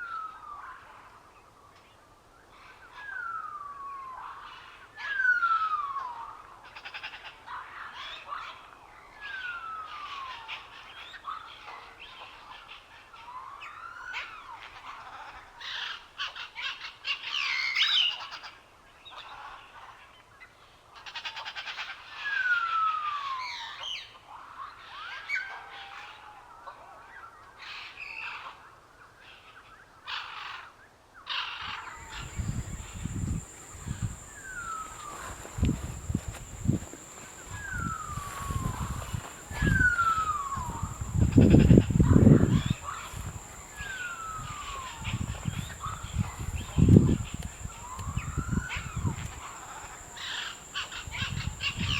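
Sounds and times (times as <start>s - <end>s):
birds chirping and trilling: 31.3s - 51.9s.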